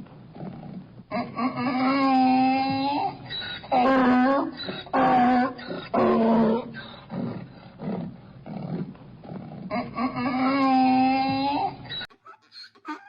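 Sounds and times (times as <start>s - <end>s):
donkey braying: 1.1s - 7.1s, 9.7s - 13.0s.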